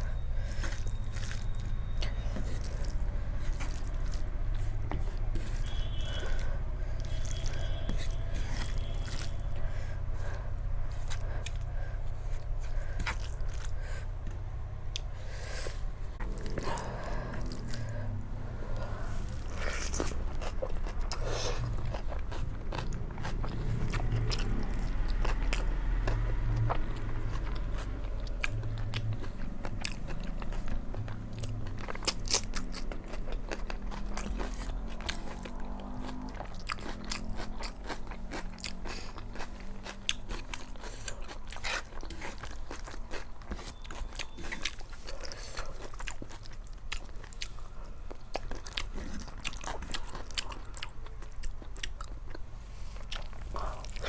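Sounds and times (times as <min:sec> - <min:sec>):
wet chewing clicks: 0:00.0 - 0:15.1, 0:16.2 - 0:18.0, 0:18.7 - 0:54.0
low rumble: 0:00.0 - 0:32.6.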